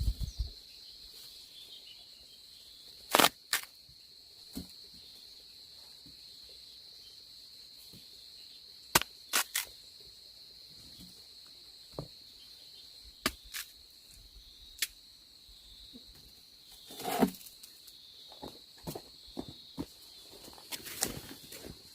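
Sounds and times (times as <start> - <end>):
insects droning: 0.0 - 21.9.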